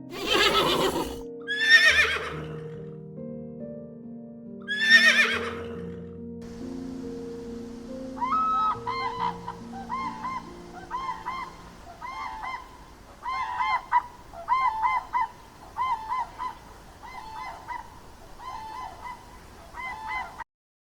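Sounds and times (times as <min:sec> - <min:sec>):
waterfowl honking: 0:00.0 - 0:01.2, 0:08.1 - 0:20.4.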